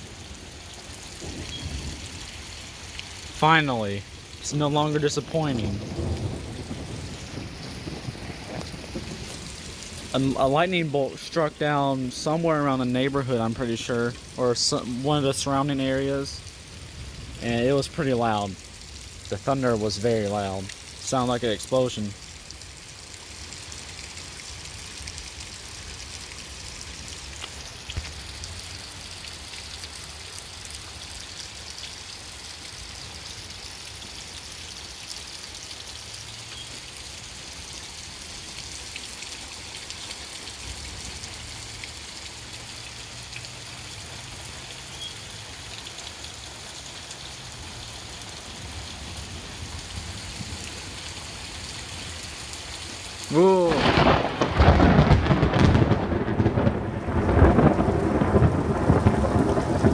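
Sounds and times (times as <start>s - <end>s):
heavy rain falling: 0.0s - 59.9s
faint low thunder rumble: 0.9s - 22.2s, 53.2s - 59.9s.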